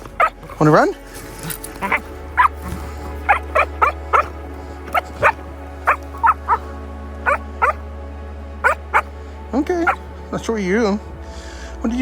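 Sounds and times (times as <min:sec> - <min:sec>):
dog barking in sharp yaps: 0:01.8 - 0:04.3, 0:05.2 - 0:06.6, 0:07.3 - 0:07.8.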